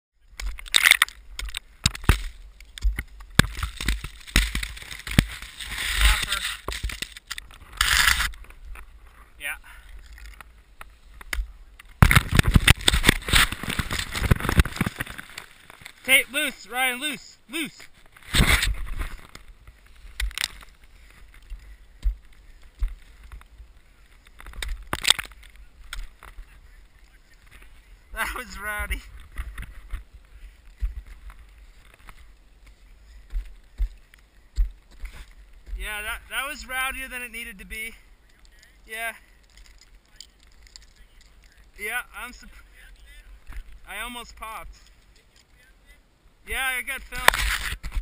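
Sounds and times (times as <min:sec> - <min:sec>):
gear knocking and scraping on ice: 0:00.3 - 0:16.2, 0:17.9 - 0:26.5, 0:39.4 - 0:41.8
ice tools striking ice: 0:00.4 - 0:02.4
rush of sliding snow and ice: 0:03.4 - 0:08.3.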